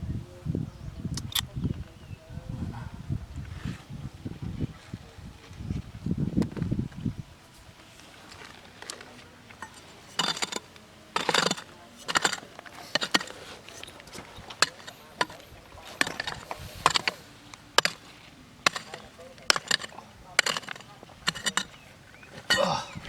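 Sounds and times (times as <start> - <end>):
digging tool scraping stones and soil: 4.7 - 23.0.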